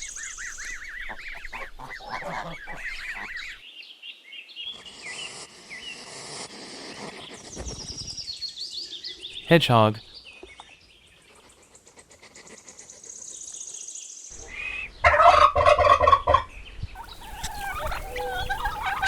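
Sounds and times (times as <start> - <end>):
turkey gobbling: 15.0 - 16.4, 17.0 - 19.0.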